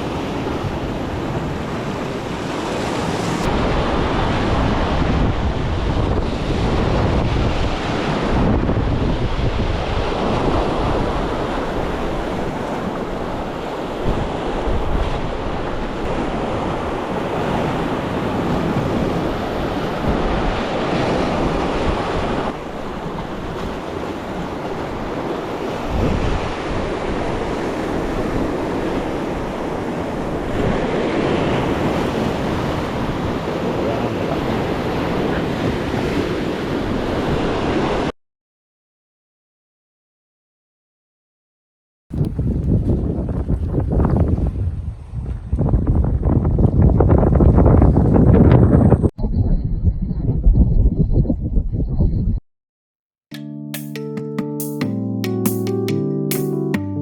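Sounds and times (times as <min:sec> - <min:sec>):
wind rumbling on microphone: 0:00.0 - 0:38.1, 0:42.1 - 0:52.4.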